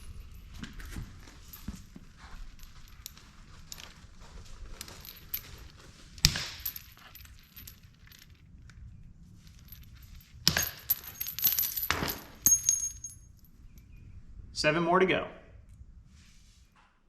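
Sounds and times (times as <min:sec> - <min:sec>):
chain clinking and rattling: 0:00.0 - 0:14.0
bolt cutters snapping chain link: 0:10.4 - 0:13.2.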